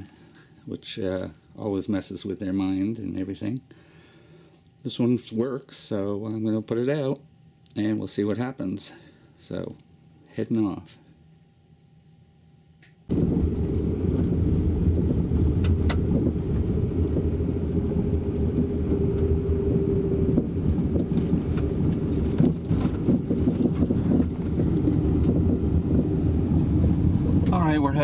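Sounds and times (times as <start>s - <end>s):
vehicle engine and road noise: 13.1s - 28.0s
knocks and rattles: 20.7s - 25.4s.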